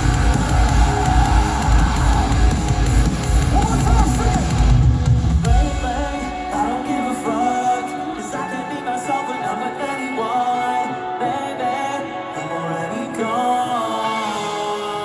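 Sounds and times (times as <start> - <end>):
live metal band playing: 0.0 - 11.8.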